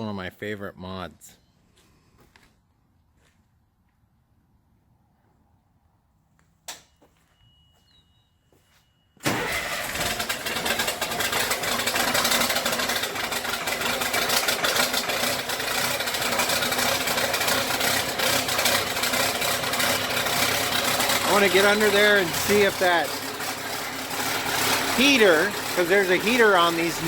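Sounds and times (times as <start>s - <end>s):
short steady beep: 7.1s - 9.2s
diesel truck engine running: 9.2s - 27.0s.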